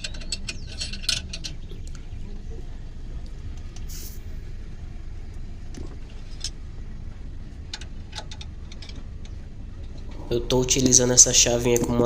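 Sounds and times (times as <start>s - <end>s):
hand tools clicking on metal: 0.0s - 1.6s
steady low rumble: 0.0s - 12.0s.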